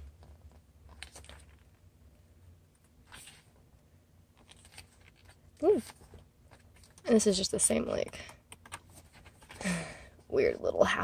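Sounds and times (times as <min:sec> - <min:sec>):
low steady hum: 0:00.0 - 0:11.0
paper pages rustling: 0:03.0 - 0:03.6, 0:04.4 - 0:07.1, 0:08.6 - 0:09.6.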